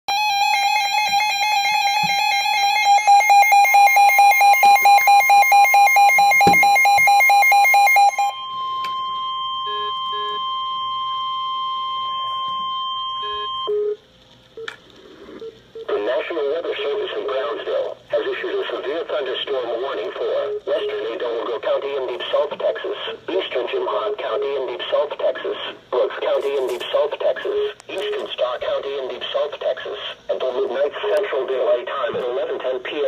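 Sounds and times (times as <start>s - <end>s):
steady high alert tone: 0.1s - 13.7s
pulsing electronic alarm beep: 0.1s - 14.0s.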